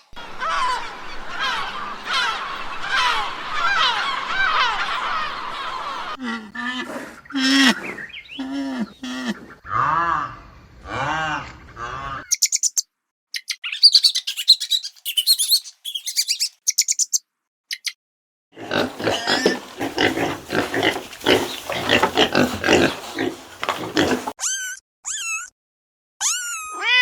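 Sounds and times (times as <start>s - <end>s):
rapid high chirping: 12.3s - 12.8s, 13.4s - 17.9s
rough grunting and squealing: 18.6s - 24.4s
pitched animal call: 18.6s - 25.5s.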